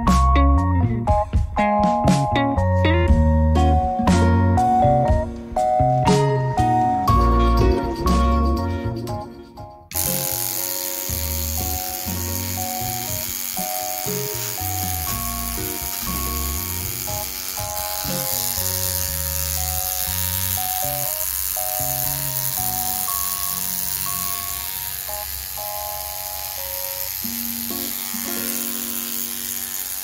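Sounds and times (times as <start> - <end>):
bass line: 0.0 - 13.4, 14.3 - 24.6
melody of held notes: 0.0 - 29.1.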